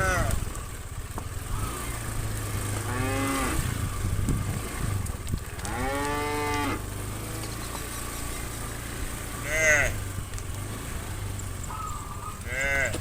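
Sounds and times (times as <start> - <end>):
cow mooing: 0.0 - 0.4, 2.8 - 3.8, 5.6 - 6.8, 9.2 - 10.1, 11.8 - 13.0.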